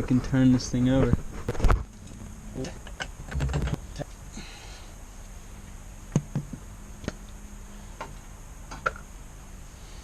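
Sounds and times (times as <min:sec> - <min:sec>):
sharp metallic clicks and knocks: 0:01.5 - 0:03.8.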